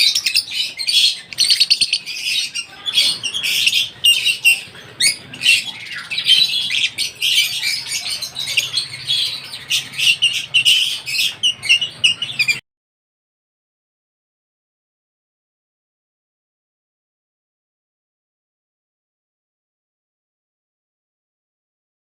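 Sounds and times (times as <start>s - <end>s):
birds chattering and squawking: 0.0s - 12.6s.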